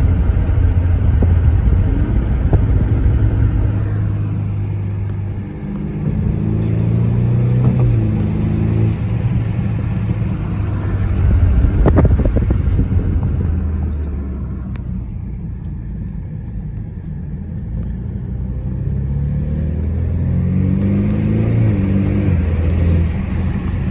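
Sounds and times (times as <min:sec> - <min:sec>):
sharp exhaust pops: 0:00.0 - 0:04.3, 0:07.4 - 0:14.2
car engine accelerating: 0:00.0 - 0:23.9.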